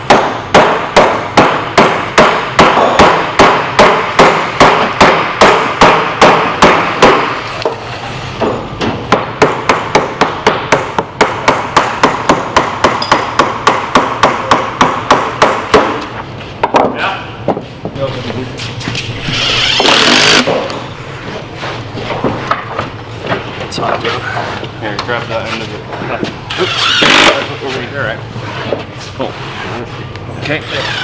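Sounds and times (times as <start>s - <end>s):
hammer blows on wood: 0.0s - 7.8s.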